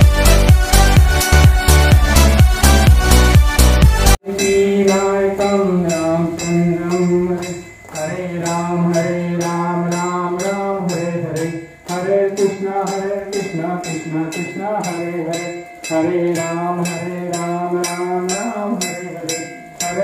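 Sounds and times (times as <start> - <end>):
jingling percussion beat: 0.0 - 20.0
long held sung notes: 4.2 - 20.0.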